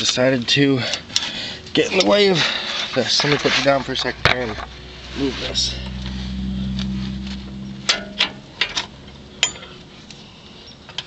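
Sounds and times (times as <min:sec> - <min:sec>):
low steady hum: 0:03.6 - 0:10.8.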